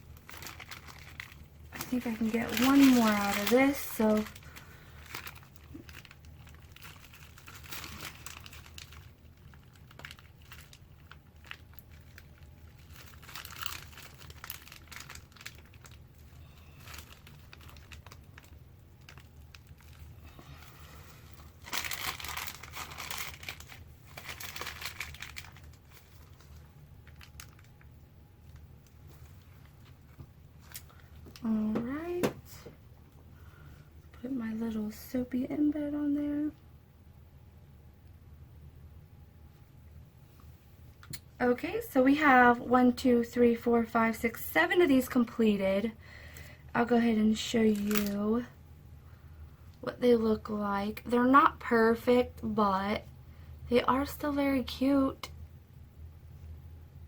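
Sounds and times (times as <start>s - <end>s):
plastic piping bag crinkling: 0.0s - 32.2s, 44.1s - 48.5s.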